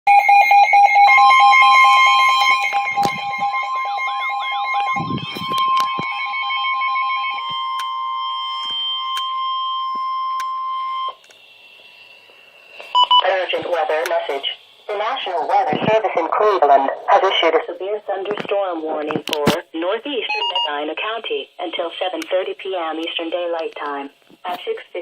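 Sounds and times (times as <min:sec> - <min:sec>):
steady alert tone: 0:00.1 - 0:17.1
warbling alarm: 0:00.1 - 0:18.0, 0:20.3 - 0:20.8
fast repeated beeping: 0:12.8 - 0:16.0, 0:20.3 - 0:20.8.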